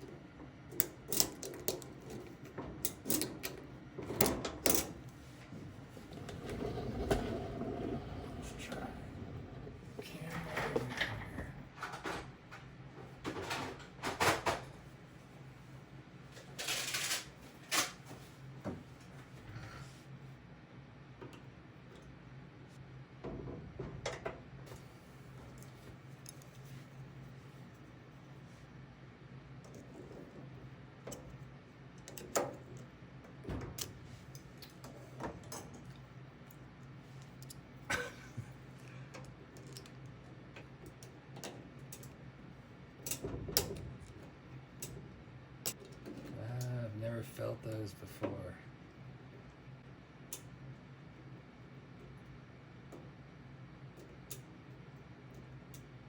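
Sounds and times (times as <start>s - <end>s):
steady low hum: 0.0s - 56.0s
lock picks clicking and scraping: 0.8s - 3.6s.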